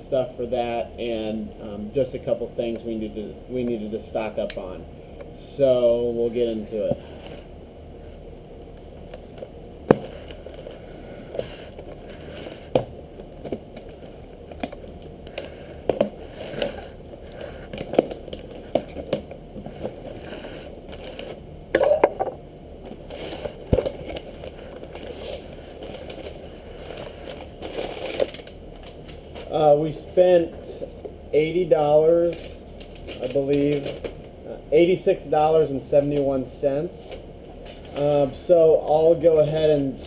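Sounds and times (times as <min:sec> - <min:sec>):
packaging rustling and crackling: 0:09.1 - 0:21.4, 0:22.8 - 0:29.6, 0:32.3 - 0:34.3.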